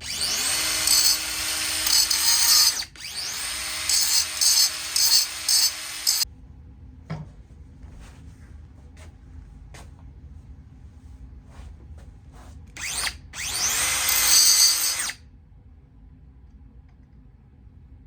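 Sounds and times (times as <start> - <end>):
power tool on metal: 0.0 - 6.2, 12.8 - 15.2.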